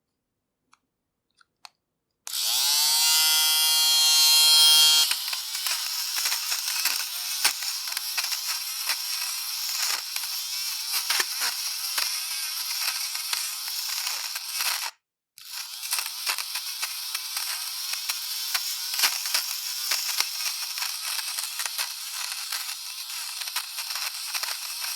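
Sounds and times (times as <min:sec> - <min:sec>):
fabric shaver motor whining: 0:02.3 - 0:24.9.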